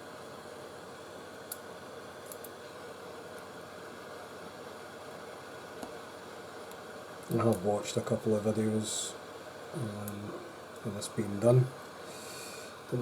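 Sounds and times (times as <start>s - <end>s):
hot air station hissing: 7.6s - 13.0s.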